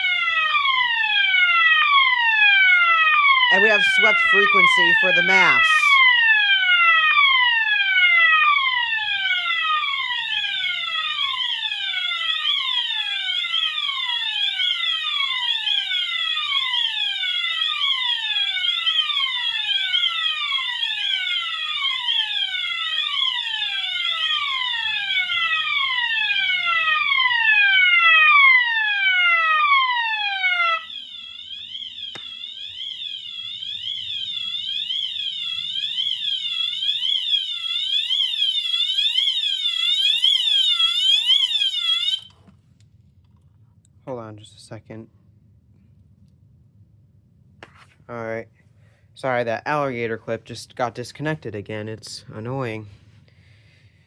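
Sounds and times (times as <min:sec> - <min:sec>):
fire alarm warbling sweep: 0:00.0 - 0:42.3
fire alarm falling sweep: 0:00.0 - 0:42.4.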